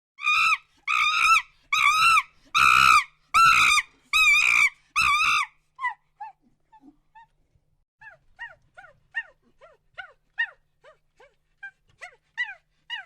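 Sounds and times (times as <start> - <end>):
monkey screaming: 0.2 - 6.0.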